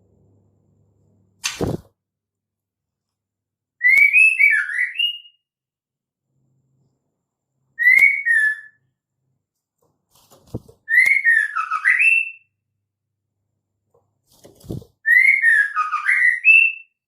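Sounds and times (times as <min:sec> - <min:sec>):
bird whistling call with clicks: 0:03.8 - 0:04.6, 0:07.8 - 0:08.6, 0:10.9 - 0:11.8.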